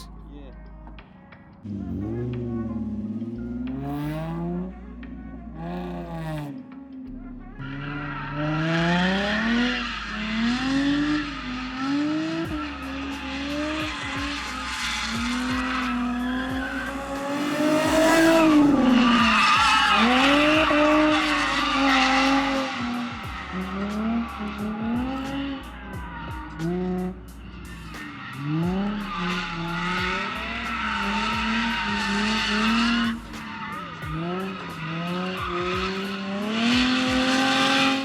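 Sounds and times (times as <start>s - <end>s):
car engine revving: 0.0s - 38.0s
tyres squealing: 7.6s - 26.7s, 27.7s - 38.0s.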